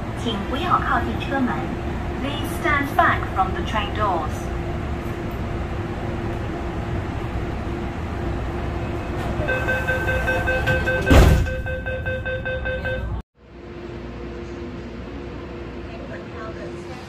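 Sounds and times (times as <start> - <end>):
train hum: 0.0 - 17.0
rapid door-closing beeps: 8.9 - 13.2
sliding doors thudding shut: 10.2 - 11.7.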